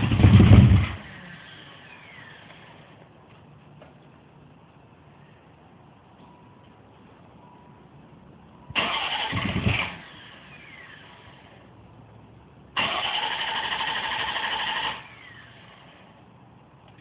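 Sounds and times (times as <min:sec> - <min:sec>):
starter motor cranking engine: 0:00.0 - 0:02.8, 0:08.8 - 0:11.1, 0:12.8 - 0:15.6.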